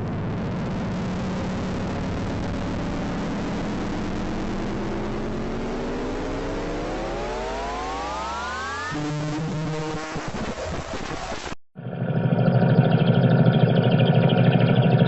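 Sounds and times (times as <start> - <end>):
low hum of several tones: 11.8 - 15.0.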